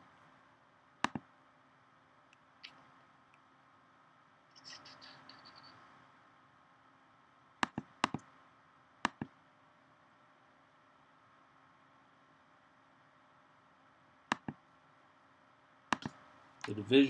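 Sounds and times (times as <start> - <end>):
mouse button clicks: 1.0 - 1.2, 7.6 - 8.3, 9.0 - 9.3, 14.3 - 14.6, 15.9 - 16.2.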